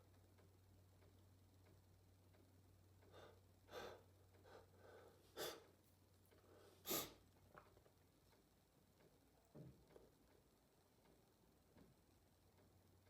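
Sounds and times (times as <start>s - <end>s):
sniffs and breaths: 3.1s - 5.7s, 6.4s - 7.2s.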